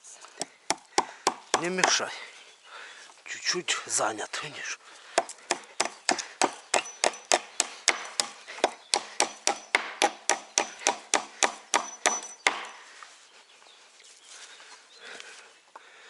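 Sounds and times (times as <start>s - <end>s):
hammer driving nails into wood: 5.2s - 12.8s.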